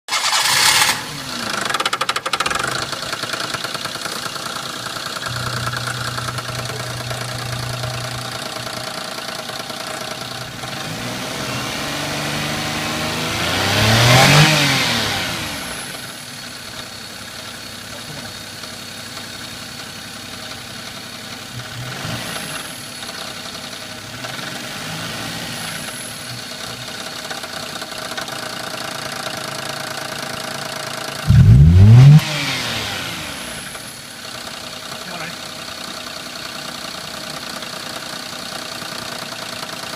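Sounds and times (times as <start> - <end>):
engine revving: 0.1 - 1.8, 5.2 - 16.1, 21.6 - 22.7, 31.2 - 33.7
car engine idling with rattle: 1.0 - 12.0, 15.6 - 31.6, 33.4 - 39.9.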